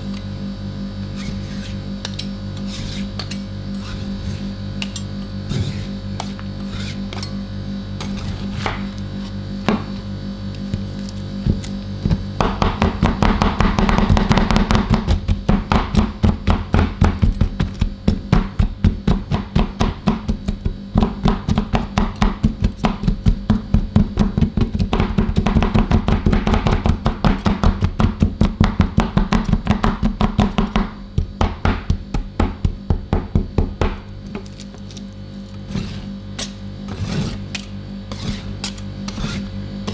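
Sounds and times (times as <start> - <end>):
cold plate low hum: 0.0 - 39.9
metal spatulas chopping on plate: 2.0 - 4.0.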